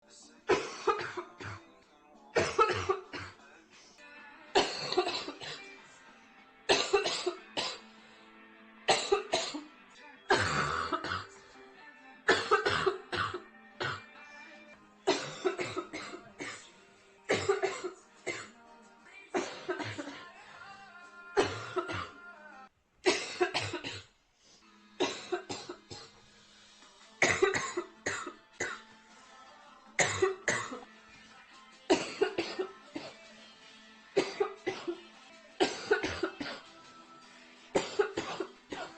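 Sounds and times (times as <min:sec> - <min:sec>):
girl coughing: 0:00.5 - 0:01.6, 0:02.4 - 0:03.3, 0:04.6 - 0:05.7, 0:06.7 - 0:07.8, 0:08.9 - 0:09.6, 0:10.3 - 0:11.3, 0:12.3 - 0:14.0, 0:15.1 - 0:16.7, 0:17.3 - 0:18.5, 0:19.4 - 0:20.2, 0:21.4 - 0:22.1, 0:23.1 - 0:24.1, 0:25.0 - 0:26.1, 0:27.2 - 0:28.8, 0:30.0 - 0:30.8, 0:31.9 - 0:33.1, 0:34.2 - 0:35.0, 0:35.6 - 0:36.6, 0:37.8 - 0:38.9.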